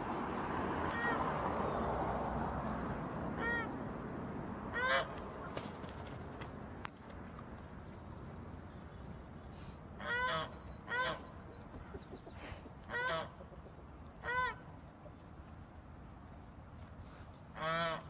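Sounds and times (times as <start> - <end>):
goose honking: 0.9 - 1.3, 4.7 - 5.2, 10.0 - 11.3, 12.9 - 13.4, 14.2 - 14.6, 17.6 - 18.0.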